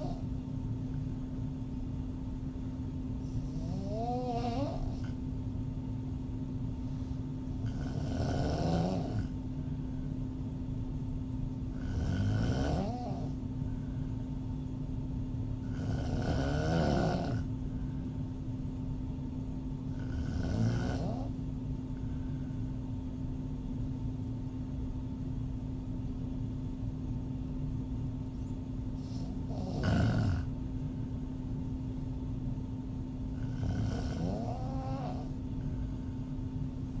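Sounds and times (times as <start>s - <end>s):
woman snoring: 0.0s - 0.2s, 3.4s - 5.2s, 7.6s - 9.4s, 11.7s - 13.4s, 15.6s - 17.5s, 19.9s - 21.4s, 29.0s - 30.5s, 33.3s - 35.4s
steady hum: 0.0s - 37.0s.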